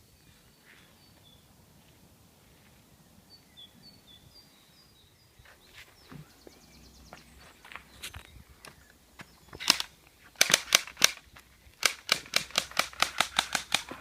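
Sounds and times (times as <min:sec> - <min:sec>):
sharp clicks: 0:09.5 - 0:14.0.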